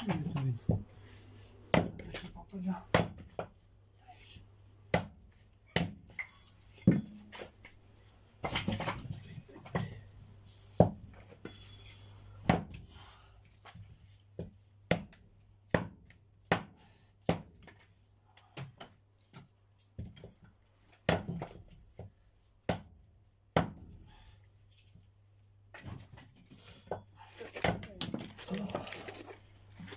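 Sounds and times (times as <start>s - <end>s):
axe splitting wood: 1.7s - 2.3s, 27.5s - 28.4s.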